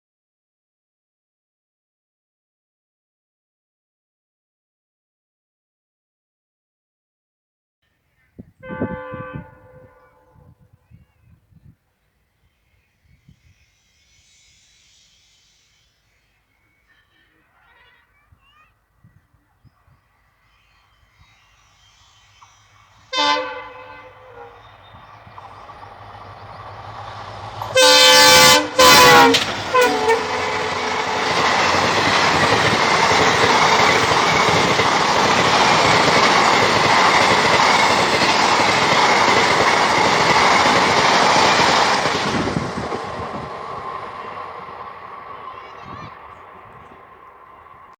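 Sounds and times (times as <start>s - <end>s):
train horn blasts: 8.6s - 10.6s, 23.1s - 25.4s, 26.2s - 33.9s
train coaches rumbling past: 19.8s - 47.9s.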